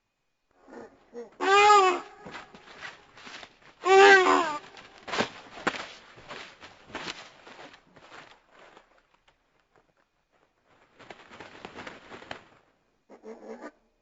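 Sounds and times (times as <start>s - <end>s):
whooshing wing flaps: 10.9s - 12.6s.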